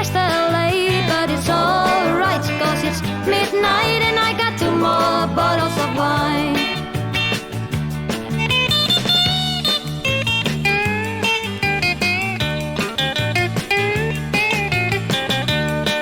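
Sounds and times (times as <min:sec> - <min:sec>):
electric bass: 0:00.0 - 0:16.0
guitar with bent notes: 0:00.0 - 0:16.0
steady drum beat: 0:00.1 - 0:16.0.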